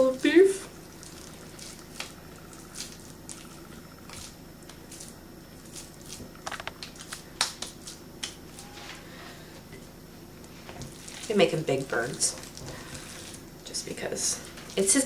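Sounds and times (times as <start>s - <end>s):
hands squishing meat: 0.6s - 8.5s, 10.4s - 13.5s.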